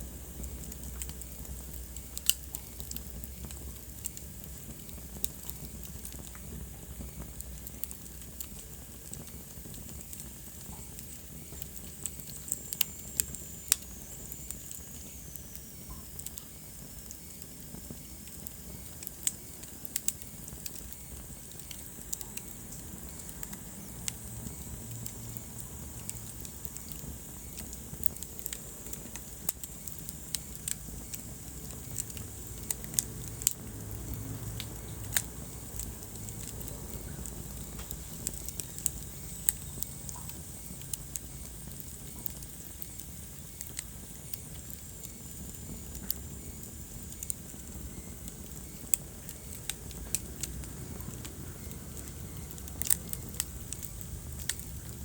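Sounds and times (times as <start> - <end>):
low rumble of flames: 0.0 - 55.0
wood fire crackling and popping: 0.0 - 55.0.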